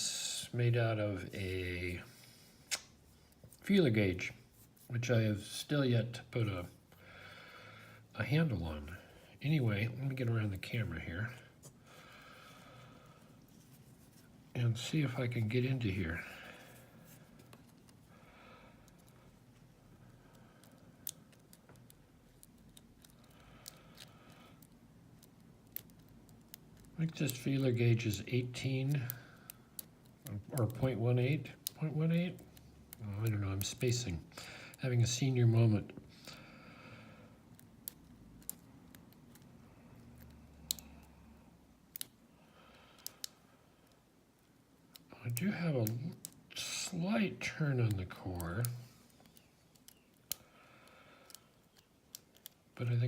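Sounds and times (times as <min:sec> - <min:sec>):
sharp click: 0:02.7 - 0:02.9.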